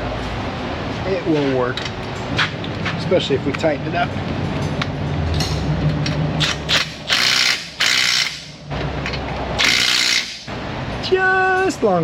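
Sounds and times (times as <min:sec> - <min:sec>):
ratchet wrench clicking: 0:06.0 - 0:10.5.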